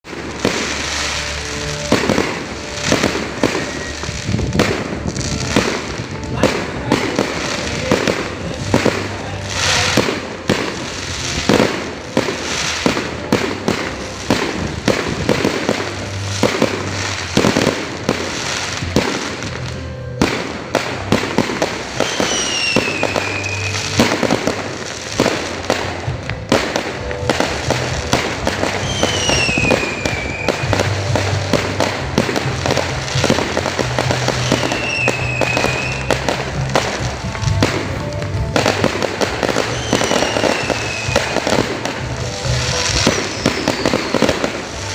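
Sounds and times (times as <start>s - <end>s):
background music: 0.0s - 44.9s
fireworks bangs and pops: 0.0s - 44.9s
falling firework whistle: 0.4s - 5.8s, 21.9s - 24.5s, 27.6s - 32.6s, 34.3s - 36.4s, 39.5s - 44.9s.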